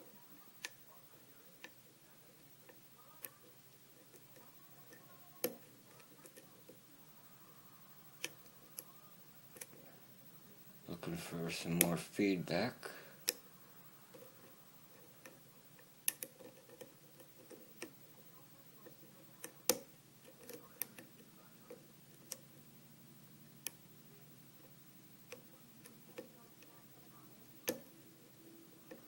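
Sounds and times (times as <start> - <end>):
faint steady hum: 0.0 - 29.0
lock pick clicking on pins: 14.1 - 18.0.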